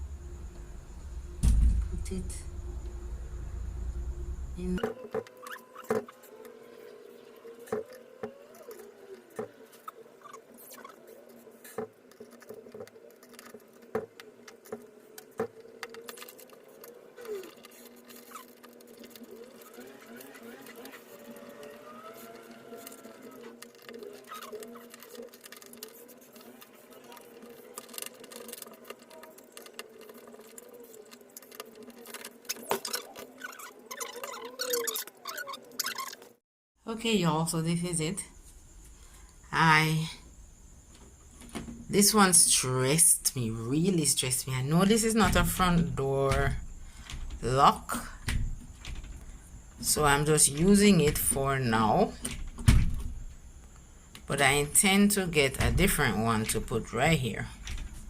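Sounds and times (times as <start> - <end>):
faint squeak: 31.9 - 36.3.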